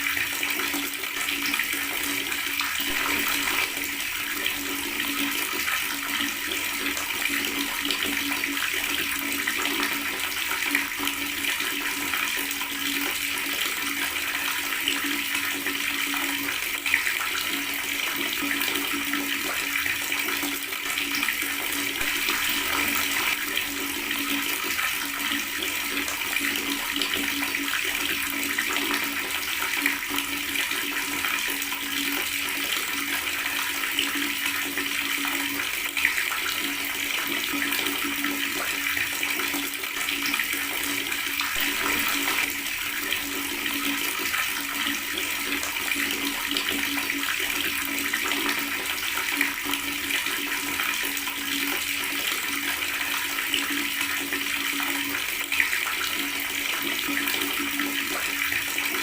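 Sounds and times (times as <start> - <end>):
tap water running and gurgling: 0.0 - 59.0.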